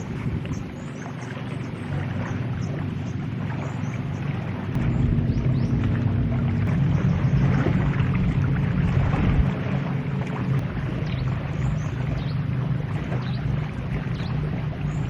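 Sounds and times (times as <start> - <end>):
wind noise: 0.0 - 0.8, 4.6 - 15.0
engine running: 0.0 - 15.0.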